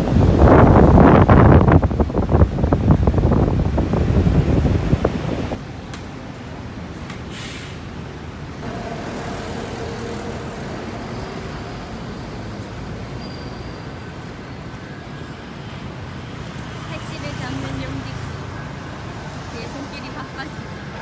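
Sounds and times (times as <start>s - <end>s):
road traffic noise: 0.0s - 21.0s
brief hiss: 7.2s - 7.9s.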